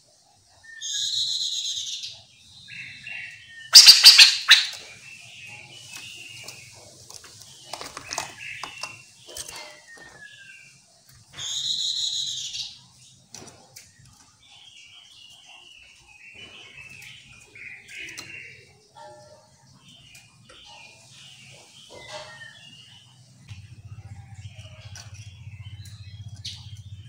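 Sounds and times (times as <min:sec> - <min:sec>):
birds harsh chattering: 0:00.0 - 0:27.0
long ringing bird call: 0:00.6 - 0:07.0, 0:08.0 - 0:13.0, 0:14.5 - 0:27.0
bird chirps and whistles: 0:00.7 - 0:02.0, 0:03.6 - 0:04.9, 0:11.4 - 0:12.6.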